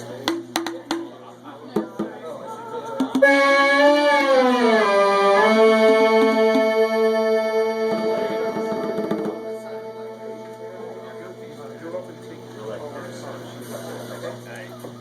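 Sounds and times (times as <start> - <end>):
electronic tone gliding down: 3.2 - 12.0.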